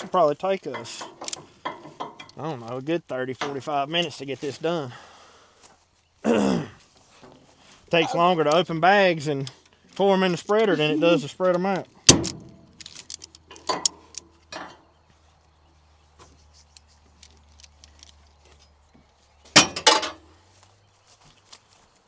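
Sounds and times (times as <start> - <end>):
knocks and clinks: 12.1 - 14.8, 19.6 - 20.2.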